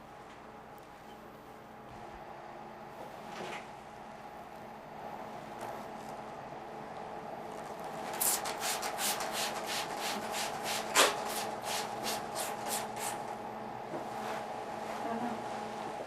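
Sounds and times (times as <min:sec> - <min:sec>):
steady electrical hum: 0:00.0 - 0:16.0.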